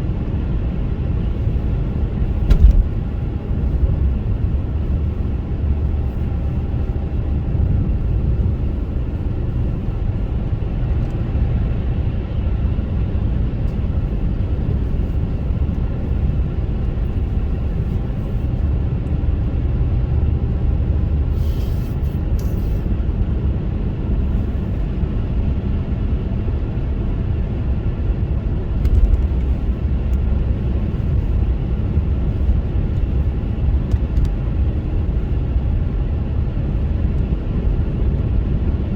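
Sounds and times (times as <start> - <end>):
car engine and tyres rumbling: 0.0 - 38.9.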